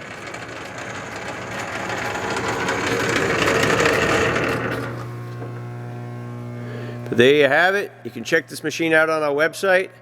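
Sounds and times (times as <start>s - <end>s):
lathe gears rattling: 0.0s - 5.7s.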